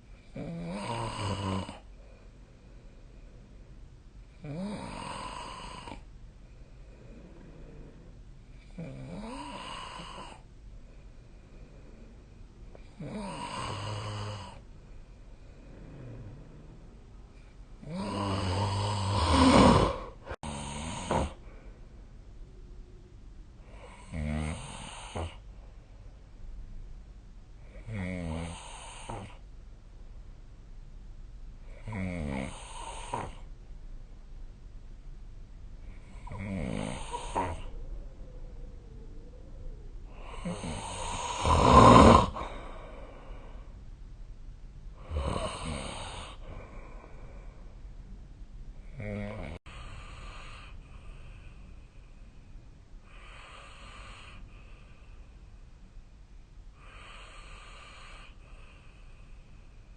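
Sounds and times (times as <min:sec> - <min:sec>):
quiet breathing: 0:00.0 - 0:59.9
person snoring: 0:00.4 - 0:01.8, 0:04.4 - 0:06.0, 0:08.7 - 0:10.4, 0:12.9 - 0:14.6, 0:17.8 - 0:21.4, 0:23.7 - 0:25.4, 0:27.8 - 0:29.4, 0:31.7 - 0:33.5, 0:35.9 - 0:37.8, 0:40.0 - 0:43.6, 0:45.0 - 0:47.3, 0:48.9 - 0:51.5, 0:56.8 - 0:58.9.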